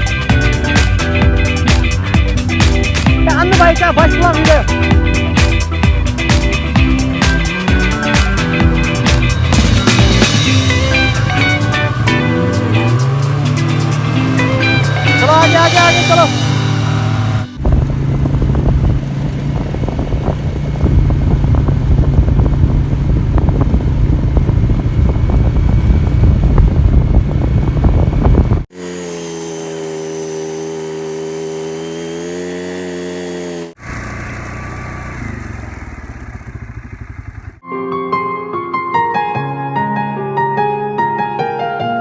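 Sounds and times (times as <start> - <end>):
small engine rattling: 5.7 - 37.6.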